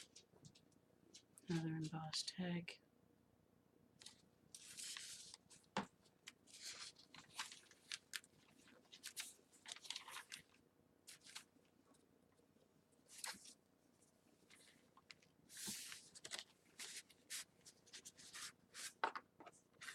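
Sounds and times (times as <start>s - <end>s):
paper pages rustling: 4.0s - 11.6s, 13.1s - 13.6s, 14.4s - 19.9s.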